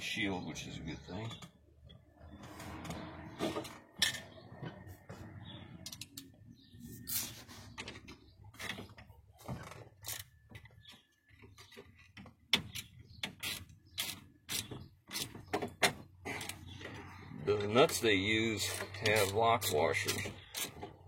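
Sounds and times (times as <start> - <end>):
tools and hardware clattering: 3.4 - 4.7.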